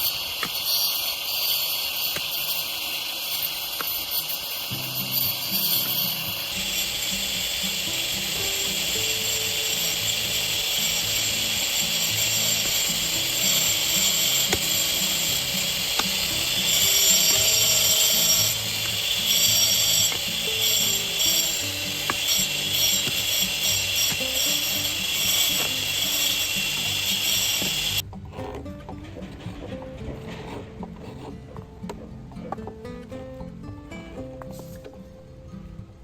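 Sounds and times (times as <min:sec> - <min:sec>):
high rasping ratchet noise: 0:00.0 - 0:28.6
music with low melody: 0:04.7 - 0:36.0.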